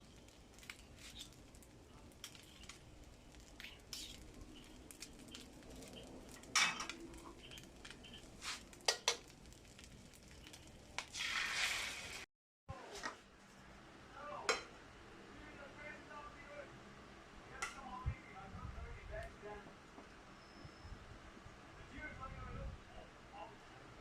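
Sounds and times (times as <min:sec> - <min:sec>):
faint sizzle: 0:00.0 - 0:24.0
metal utensil scraping a pan: 0:03.6 - 0:09.3.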